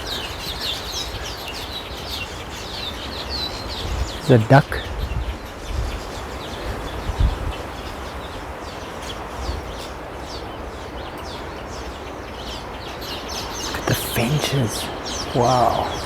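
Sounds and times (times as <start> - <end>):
finches chirping: 11.3 - 16.0.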